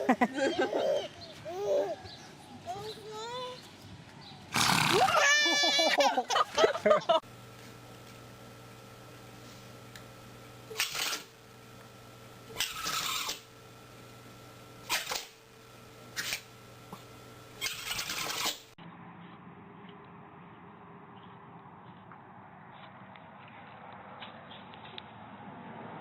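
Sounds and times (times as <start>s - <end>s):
animal sneezing: 4.5s - 5.5s.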